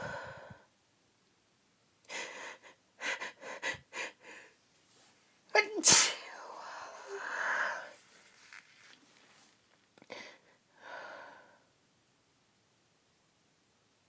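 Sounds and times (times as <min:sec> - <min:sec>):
woman sniffing: 0:05.7 - 0:06.3.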